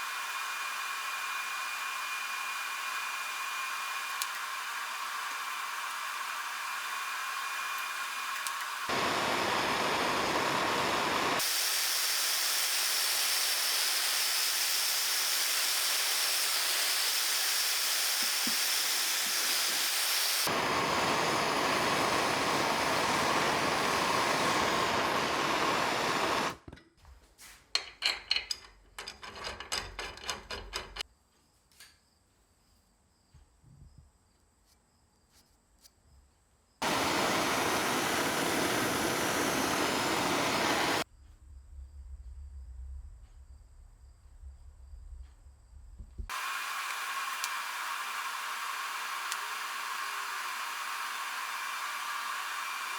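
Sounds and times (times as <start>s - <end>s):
power tool working metal: 0.0s - 26.6s, 36.8s - 41.0s, 46.3s - 52.9s
clanks of metal parts: 27.8s - 31.0s.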